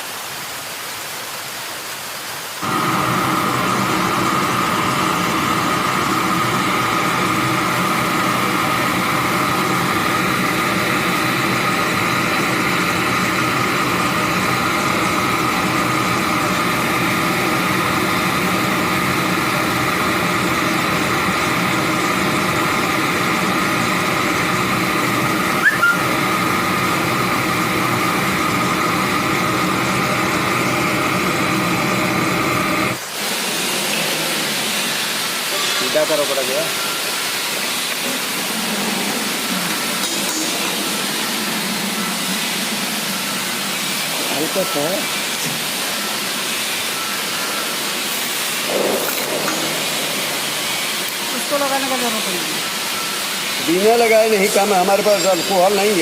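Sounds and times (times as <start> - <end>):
gas torch burning: 2.6 - 56.0.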